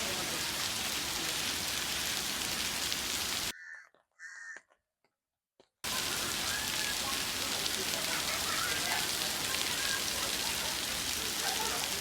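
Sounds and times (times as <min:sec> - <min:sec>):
steady outdoor hiss like rain: 0:00.0 - 0:03.5, 0:05.8 - 0:12.0
crow cawing: 0:03.5 - 0:04.6.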